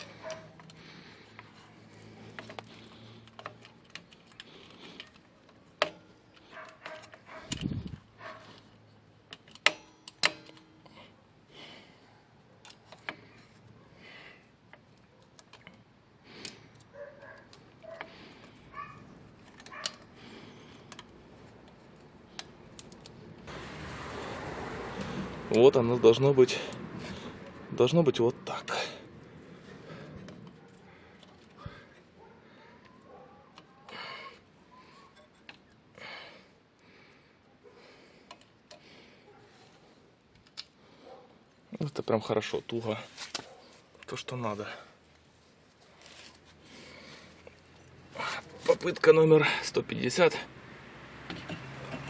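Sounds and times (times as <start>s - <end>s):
metallic clicks of tools and parts: 0.0s - 11.1s, 14.7s - 18.6s, 19.3s - 23.5s, 38.2s - 38.8s, 40.3s - 40.8s
faint handling noise: 38.1s - 49.3s.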